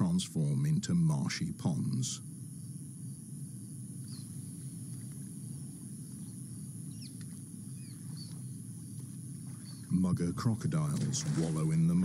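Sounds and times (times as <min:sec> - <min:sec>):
high insect drone: 0:00.0 - 0:12.0
bird chirps: 0:02.6 - 0:10.1.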